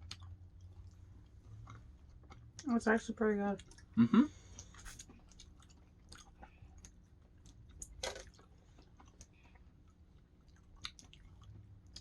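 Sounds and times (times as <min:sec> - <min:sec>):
person chewing a crunchy snack: 0:04.5 - 0:12.0.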